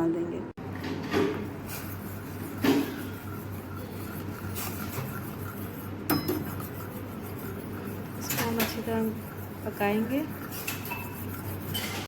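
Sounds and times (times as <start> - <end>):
steady low hum: 0.0 - 12.0
utensils knocking in a pan: 6.0 - 6.6.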